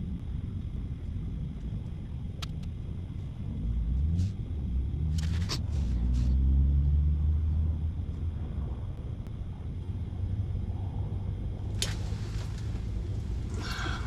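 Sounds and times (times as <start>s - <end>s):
vehicle engine passing by: 3.8s - 7.9s.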